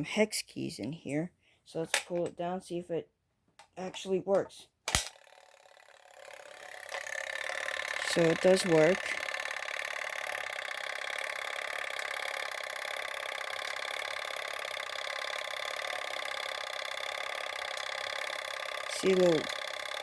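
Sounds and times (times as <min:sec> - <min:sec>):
mechanical whirring: 0:04.9 - 0:20.0.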